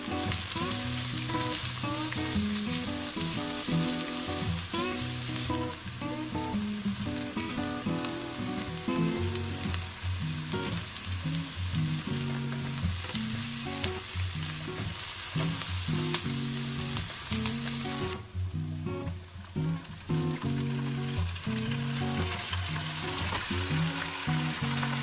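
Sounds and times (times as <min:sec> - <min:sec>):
food sizzling in a pan: 0:00.0 - 0:25.0.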